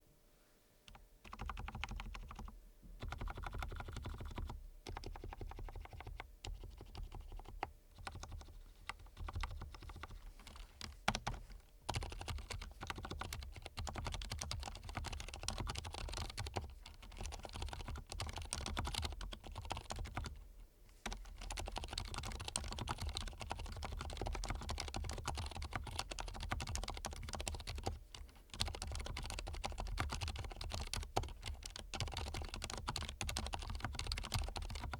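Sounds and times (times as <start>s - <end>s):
mechanical keyboard typing: 0.9s - 20.4s, 21.0s - 34.9s.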